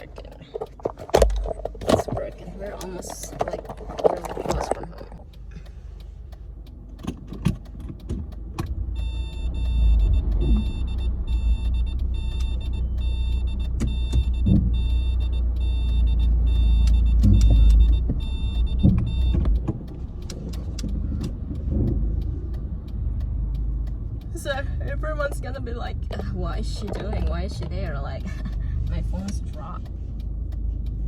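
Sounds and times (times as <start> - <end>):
knocks and rattles: 0.0 - 5.2
car engine rumbling: 0.0 - 31.0
car warning chime: 8.8 - 19.6.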